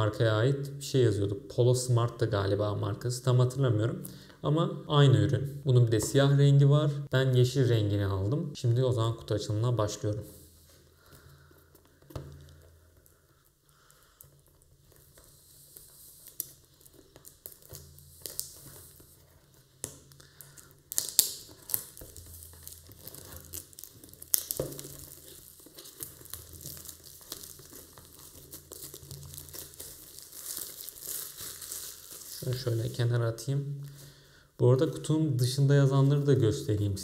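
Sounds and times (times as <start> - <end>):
wrapper crinkling and tearing: 10.6 - 34.0.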